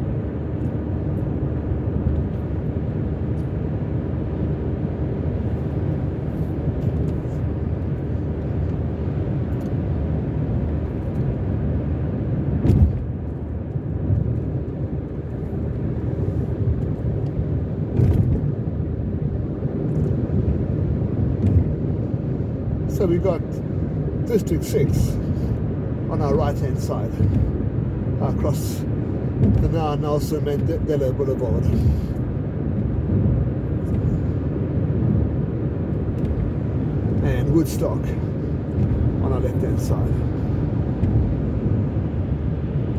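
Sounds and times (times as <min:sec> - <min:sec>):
car engine and tyre rumble: 0:00.0 - 0:42.9
short thumps: 0:27.1 - 0:27.6, 0:29.3 - 0:30.0.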